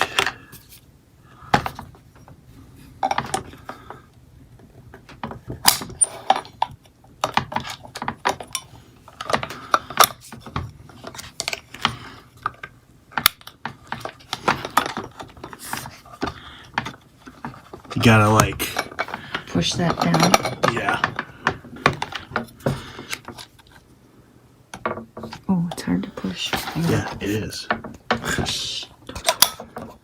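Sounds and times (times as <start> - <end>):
metal parts clinking and knocking: 18.6 - 23.5.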